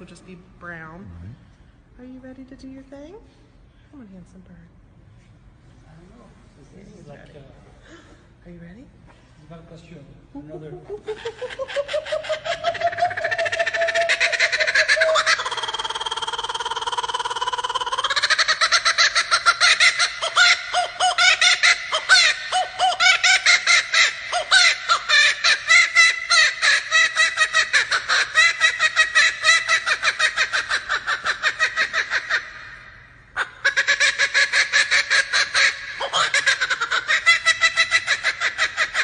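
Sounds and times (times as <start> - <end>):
kookaburra laughing call: 10.4 - 39.0.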